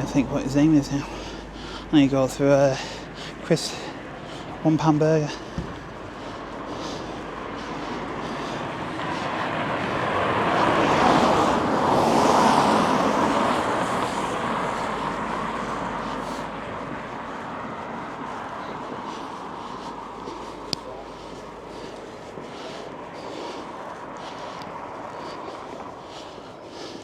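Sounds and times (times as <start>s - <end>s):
vehicle passing by: 0.0s - 27.0s.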